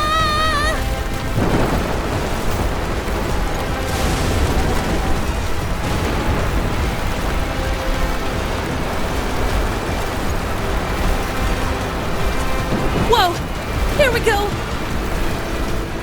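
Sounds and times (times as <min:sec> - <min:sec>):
person screaming: 0:00.0 - 0:00.8
faint music score: 0:00.0 - 0:16.0
rumble of wind and debris: 0:00.0 - 0:16.0.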